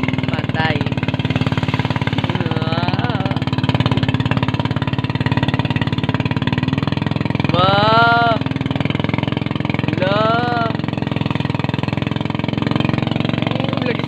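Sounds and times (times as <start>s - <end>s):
engine running with even pulsing: 0.0s - 14.0s
voice calling rising in pitch: 2.2s - 3.7s, 7.5s - 8.5s, 9.9s - 10.9s.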